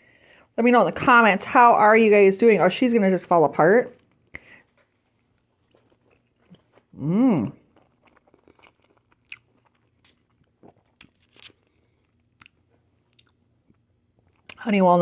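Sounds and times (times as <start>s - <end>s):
close chewing with crunches: 4.0s - 14.6s
person humming mmm: 6.9s - 7.6s.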